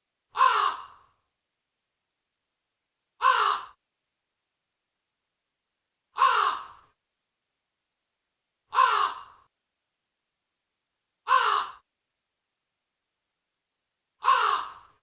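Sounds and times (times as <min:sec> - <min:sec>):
crow cawing: 0:00.3 - 0:01.1, 0:03.2 - 0:03.8, 0:06.2 - 0:06.8, 0:08.7 - 0:09.5, 0:11.3 - 0:11.8, 0:14.2 - 0:15.0.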